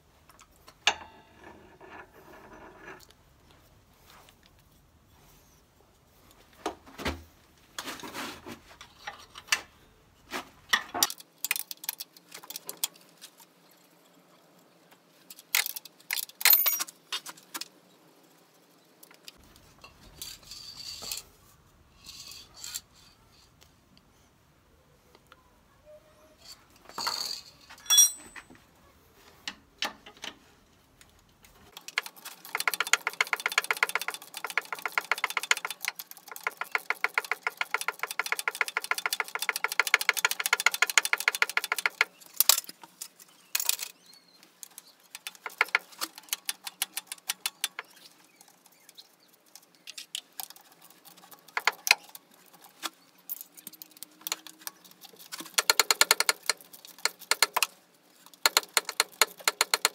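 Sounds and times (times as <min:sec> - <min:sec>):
ratchet wrench clicking: 0:55.6 - 0:57.7, 0:58.4 - 0:59.9.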